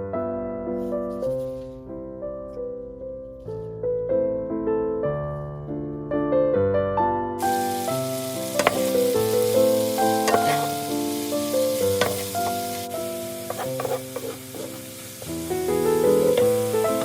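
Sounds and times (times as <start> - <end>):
piano music: 0.0 - 17.0
food sizzling in a frying pan: 7.4 - 17.0.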